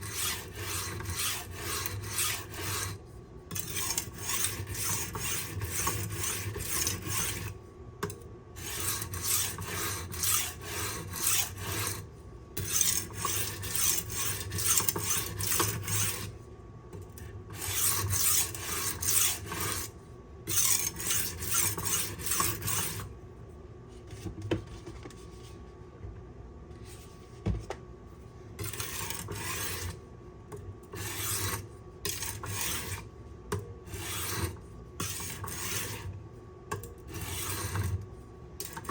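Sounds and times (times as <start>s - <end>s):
knife rasping on sharpening stone: 0.0s - 7.5s, 8.6s - 12.0s, 12.6s - 16.3s, 17.6s - 19.9s, 20.5s - 23.0s, 28.6s - 30.0s, 31.0s - 33.0s, 33.9s - 36.1s, 37.1s - 38.0s.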